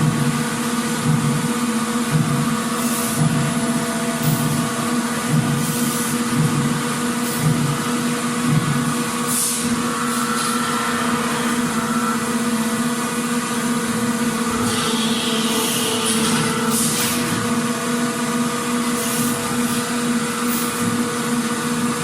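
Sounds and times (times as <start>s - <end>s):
factory machinery hum: 0.0s - 22.0s
soft pulsing beat: 1.0s - 2.6s, 3.2s - 5.7s, 6.3s - 7.8s, 8.4s - 8.9s.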